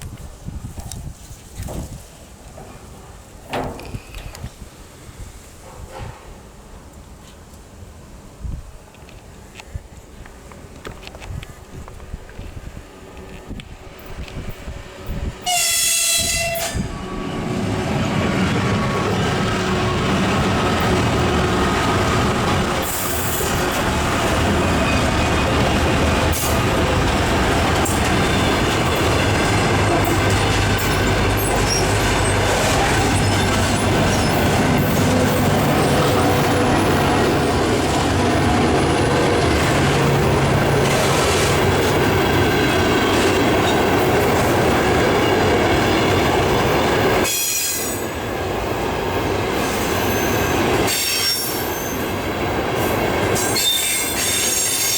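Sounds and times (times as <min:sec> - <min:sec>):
train wheel and rail noise: 0:00.0 - 0:54.9.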